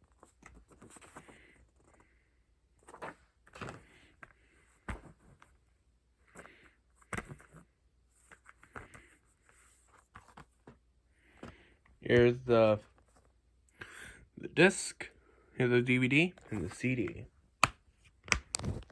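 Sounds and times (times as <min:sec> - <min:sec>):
paper rustling: 0:00.0 - 0:02.2, 0:02.8 - 0:05.6, 0:06.2 - 0:13.4, 0:18.0 - 0:18.9.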